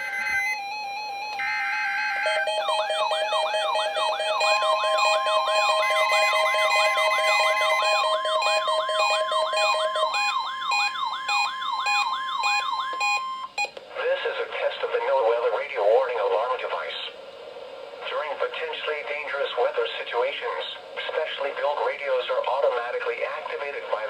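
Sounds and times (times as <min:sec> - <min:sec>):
steady high warning tone: 0:00.0 - 0:13.7.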